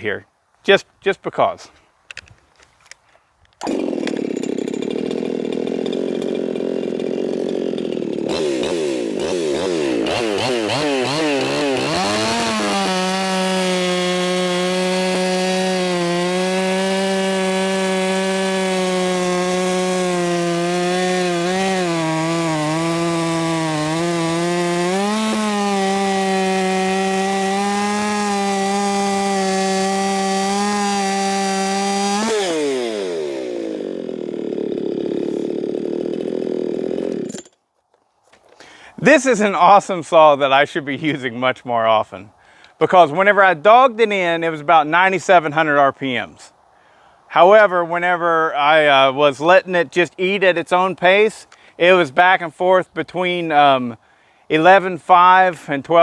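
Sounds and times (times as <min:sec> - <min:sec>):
chainsaw cutting wood: 0:02.9 - 0:39.9, 0:48.9 - 0:52.4.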